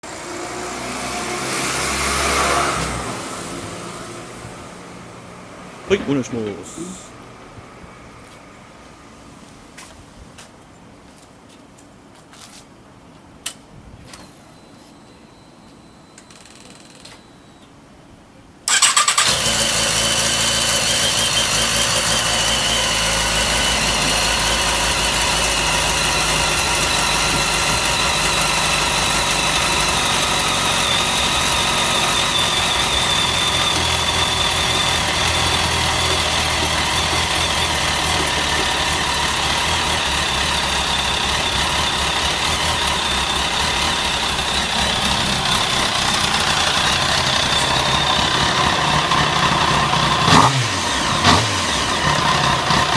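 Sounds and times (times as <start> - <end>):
electric starter cranking: 18.7 - 48.5
motorcycle engine idling: 18.7 - 52.9.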